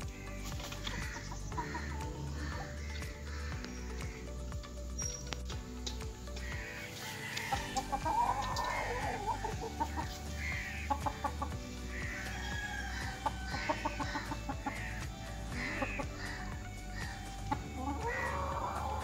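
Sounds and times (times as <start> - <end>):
chickens clucking and calling: 0.0 - 4.3, 6.1 - 19.0
background music with steady beat: 0.0 - 19.0.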